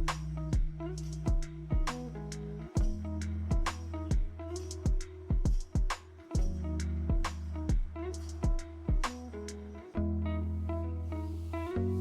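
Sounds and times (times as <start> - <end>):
guitar chords: 0.0 - 12.0
steady bass line: 0.0 - 12.0
drum hits: 2.8 - 4.3, 4.9 - 9.2.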